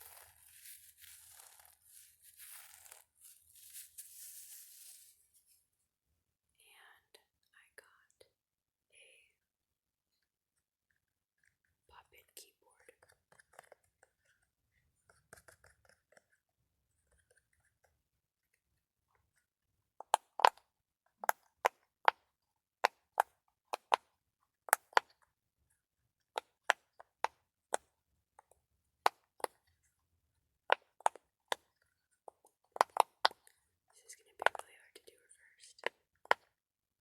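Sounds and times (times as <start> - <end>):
faint handling sounds: 0.0 - 5.8.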